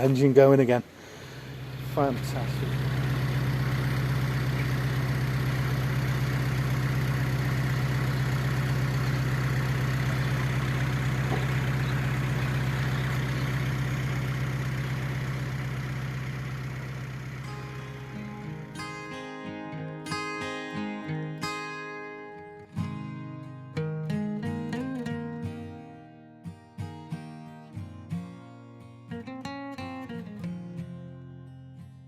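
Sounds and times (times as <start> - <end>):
diesel engine idling: 0.0 - 21.0.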